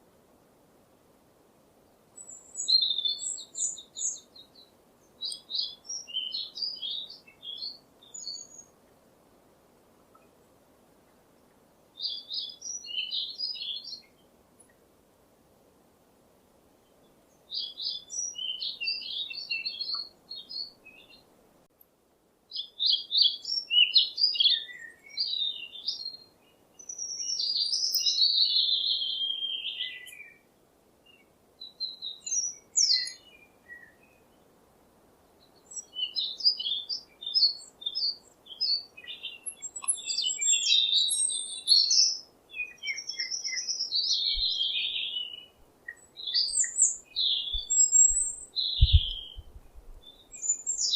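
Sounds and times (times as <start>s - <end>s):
faint steady hiss: 0.0s - 50.9s
birds chirping and trilling: 2.2s - 8.7s, 12.0s - 14.2s, 17.5s - 21.2s, 22.6s - 30.4s, 31.6s - 34.4s, 35.4s - 50.9s.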